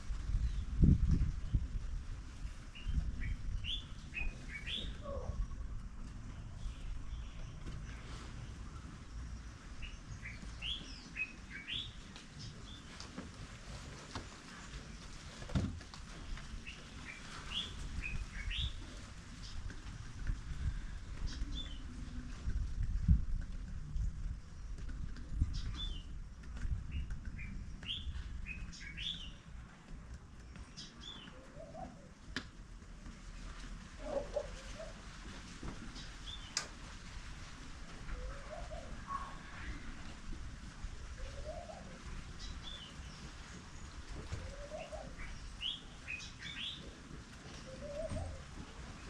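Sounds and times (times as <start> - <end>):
birds chirping: 2.7 - 13.0, 16.5 - 20.0, 26.9 - 29.6, 30.3 - 32.3, 38.1 - 49.0.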